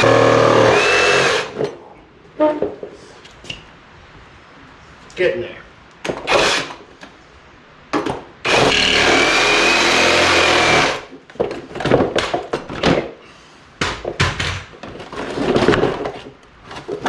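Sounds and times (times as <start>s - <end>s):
power tool cutting plastic: 0.0s - 1.6s, 6.3s - 6.8s, 8.5s - 11.1s.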